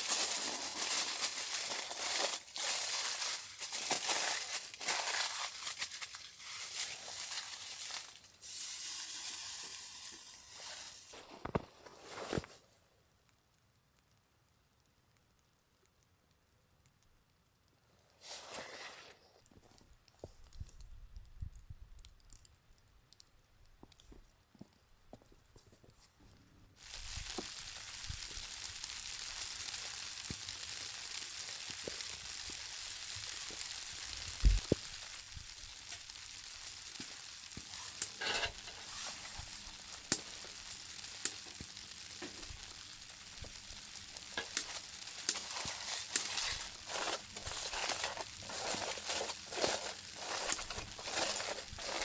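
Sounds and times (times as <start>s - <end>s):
food sizzling in a hot pan: 0.0s - 11.2s, 26.8s - 52.0s
pops and crackles: 0.0s - 52.0s.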